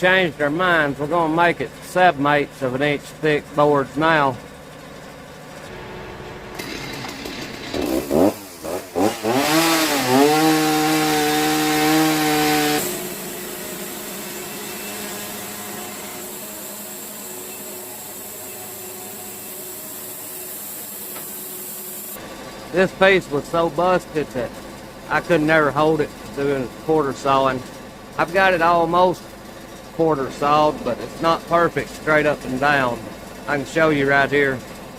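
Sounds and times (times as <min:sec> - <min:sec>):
band sawmill sawing a log: 0:06.6 - 0:27.5.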